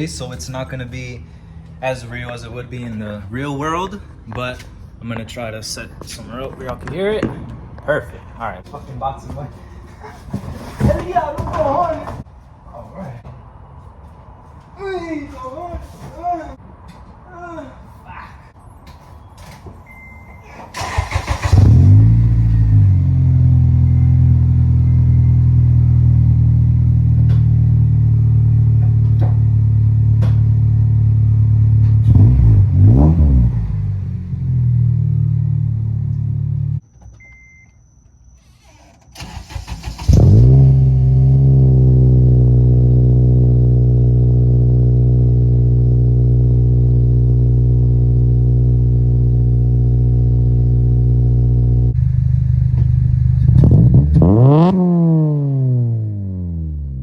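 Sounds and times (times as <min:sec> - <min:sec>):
car engine starting and idling: 0:19.9 - 0:37.6, 0:38.6 - 0:57.0.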